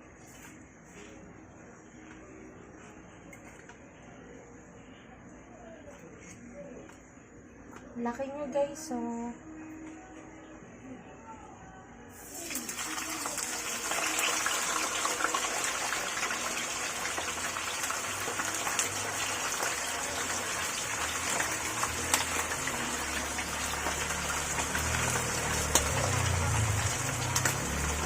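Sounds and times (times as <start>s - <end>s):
meat sizzling in hot oil: 12.3s - 28.0s.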